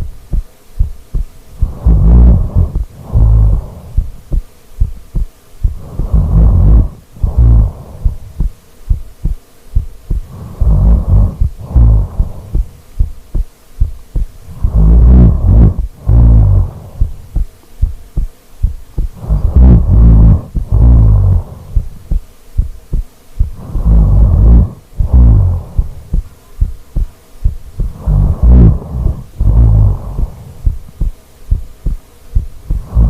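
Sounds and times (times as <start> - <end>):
person snoring loudly: 1.6 - 4.4, 5.6 - 8.5, 10.1 - 12.7, 14.4 - 17.4, 19.0 - 22.0, 23.4 - 26.2, 27.8 - 31.1, 32.7 - 33.0.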